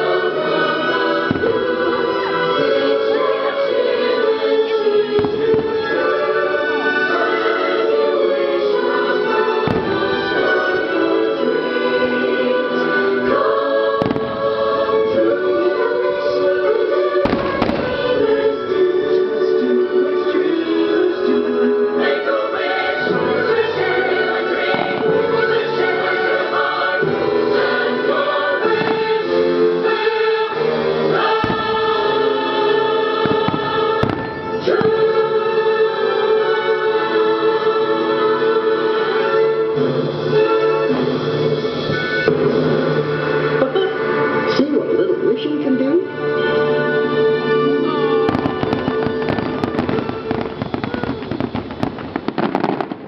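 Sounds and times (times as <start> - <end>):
choir singing over orchestra: 0.0 - 45.4, 46.0 - 53.0
fireworks bursting bangs: 0.9 - 2.8, 5.1 - 6.5, 9.5 - 12.5, 13.4 - 15.6, 17.1 - 19.0, 22.6 - 27.9, 28.6 - 30.1, 31.1 - 36.0, 48.2 - 53.0.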